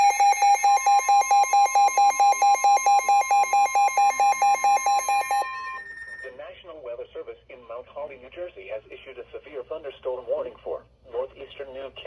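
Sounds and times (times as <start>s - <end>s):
rapid electronic alarm beeping: 0.0s - 6.3s
steady high tone: 0.0s - 6.4s.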